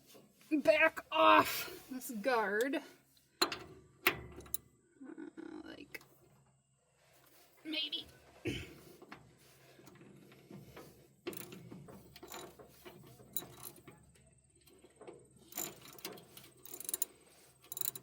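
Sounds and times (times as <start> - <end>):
hand tools clicking and scraping metal: 8.7 - 18.0.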